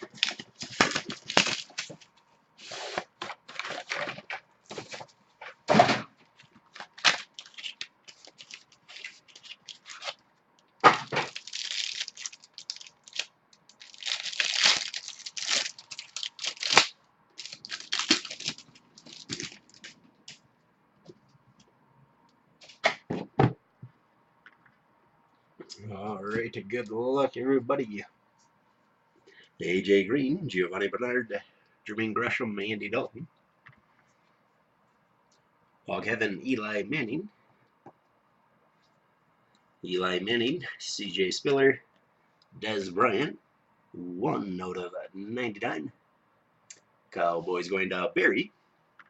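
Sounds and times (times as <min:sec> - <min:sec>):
plastic wrappers tearing and crinkling: 0:00.0 - 0:02.1, 0:06.7 - 0:10.2, 0:10.8 - 0:20.4.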